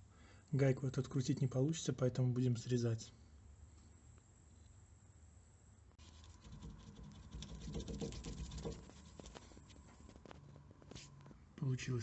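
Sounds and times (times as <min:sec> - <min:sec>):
faint steady whine: 0:00.0 - 0:12.0
crackling clicks and scraping: 0:06.0 - 0:11.4.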